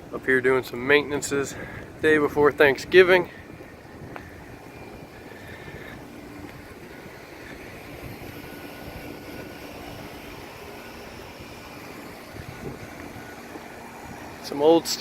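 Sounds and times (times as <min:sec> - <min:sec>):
mechanical engine drone: 0:00.0 - 0:15.0.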